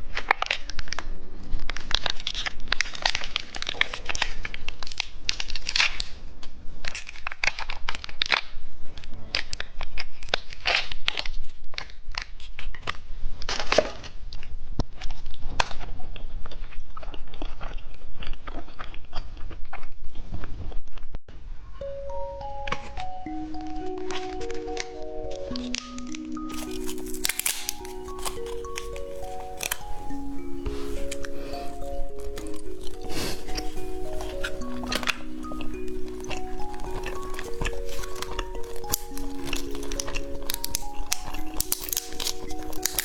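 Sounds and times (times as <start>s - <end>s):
plastic wrapper crinkling: 22.1s - 43.0s.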